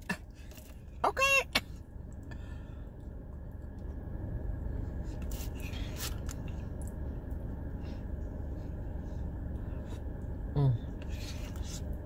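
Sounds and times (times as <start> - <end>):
car engine idling: 0.0 - 12.0.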